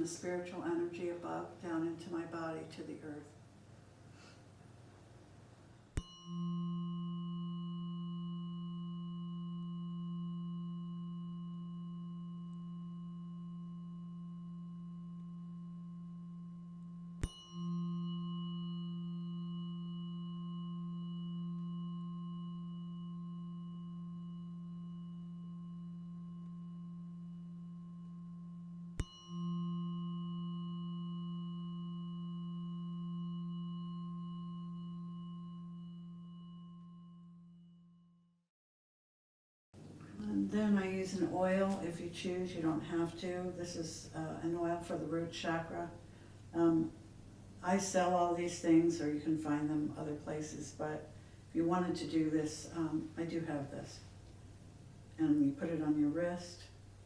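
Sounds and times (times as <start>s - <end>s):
chime ringing: 6.0s - 15.7s, 17.2s - 26.9s, 29.0s - 37.2s.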